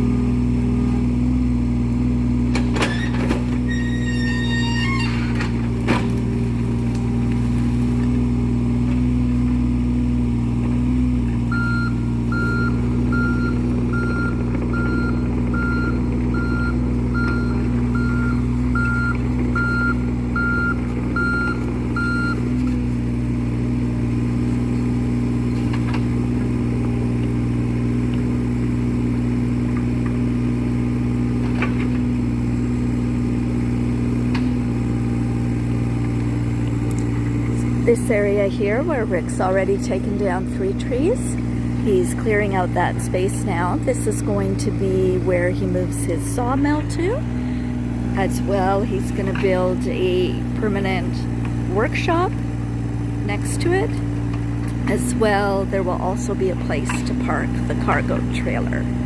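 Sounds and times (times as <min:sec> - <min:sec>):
excavator diesel engine running: 0:00.0 - 0:59.0
travel alarm beeping: 0:11.5 - 0:22.5.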